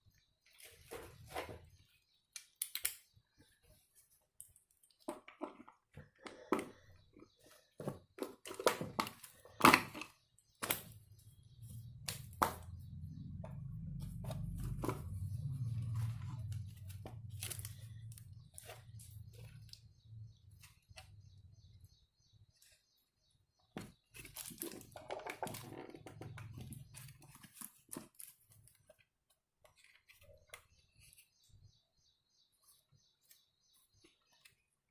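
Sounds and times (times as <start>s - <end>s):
plastic parts clicking and knocking: 4.4s - 11.0s, 23.7s - 30.8s.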